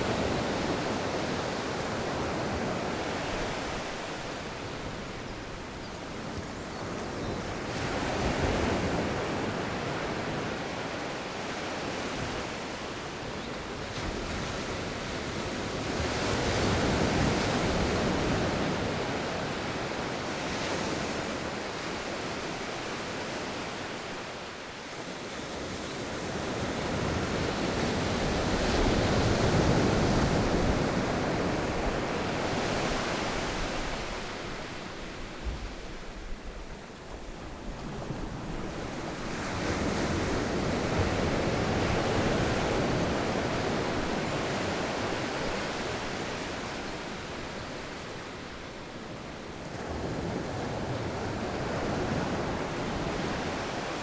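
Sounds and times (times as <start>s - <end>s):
wind: 0.0s - 54.0s.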